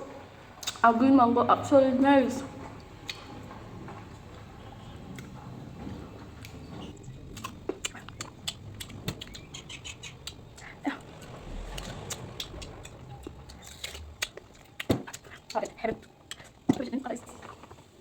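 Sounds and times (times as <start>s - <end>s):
wet clicks and lip smacks: 0.6s - 0.8s, 7.4s - 10.7s, 11.7s - 16.9s
person chewing: 7.2s - 16.8s.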